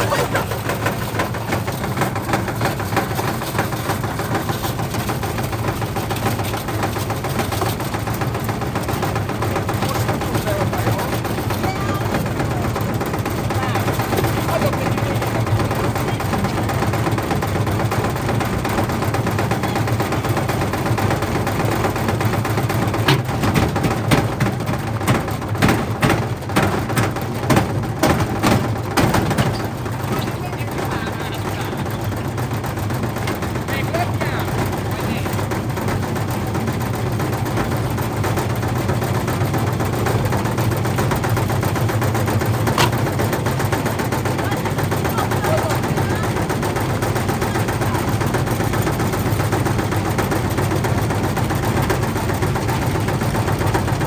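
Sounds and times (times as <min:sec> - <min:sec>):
washing machine rumble and hum: 0:00.0 - 0:54.0
bricks banging against drum: 0:23.0 - 0:30.3.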